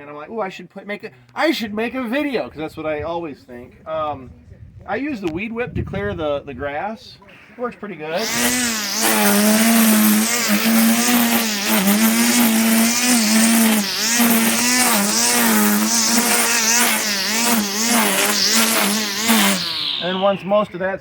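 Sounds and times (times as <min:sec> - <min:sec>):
string trimmer cutting grass: 0:08.1 - 0:20.6.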